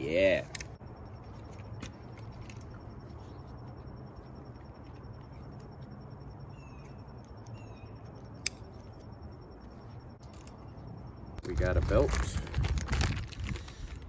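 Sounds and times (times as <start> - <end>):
steady low hum: 0.0 - 12.7.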